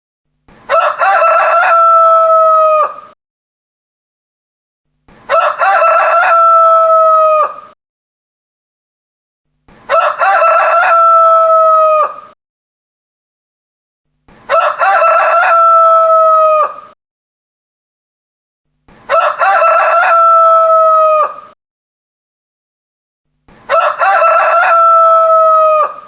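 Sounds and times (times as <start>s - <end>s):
rooster crowing: 0.7s - 3.2s, 5.3s - 7.8s, 9.9s - 12.4s, 14.5s - 17.0s, 19.1s - 21.6s, 23.7s - 26.0s.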